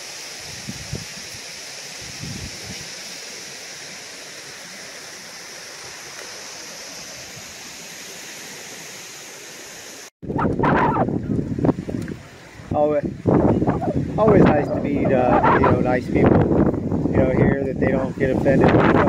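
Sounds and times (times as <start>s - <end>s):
rushing wind and water: 0.0s - 19.0s
wind buffeting microphone: 2.0s - 2.8s, 10.2s - 19.0s.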